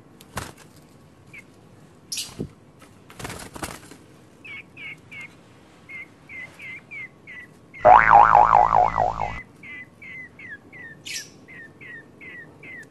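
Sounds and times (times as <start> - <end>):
bird calling short hooked notes: 7.8 - 9.4
loud wavering bird warble: 7.8 - 9.4.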